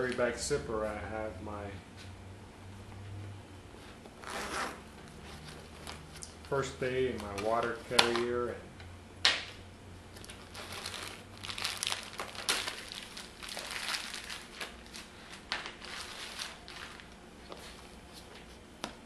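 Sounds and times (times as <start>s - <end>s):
rustling and crinkling of bag contents: 10.1s - 18.1s.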